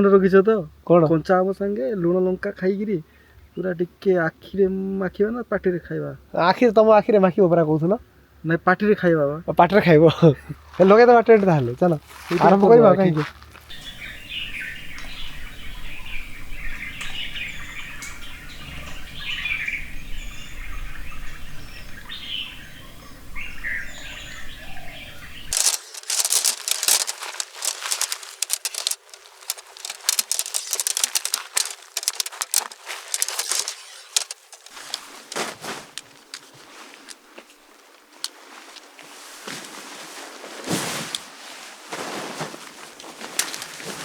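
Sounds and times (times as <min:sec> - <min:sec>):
rustle of dry leaves and twigs: 0:11.9 - 0:15.9, 0:23.4 - 0:44.0
small birds chirping: 0:13.7 - 0:38.7.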